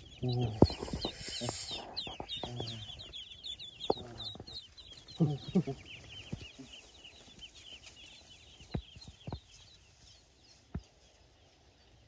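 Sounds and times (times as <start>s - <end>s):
ducklings peeping: 0.0s - 12.0s.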